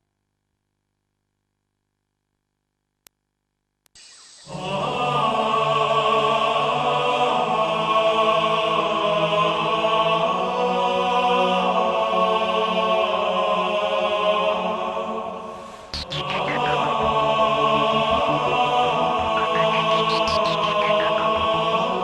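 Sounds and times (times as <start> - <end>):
music with long held chords: 4.4 - 22.0.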